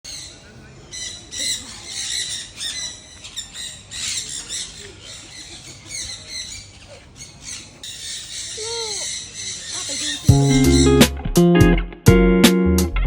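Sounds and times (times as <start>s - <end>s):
parrot screeching: 6.0s - 11.0s.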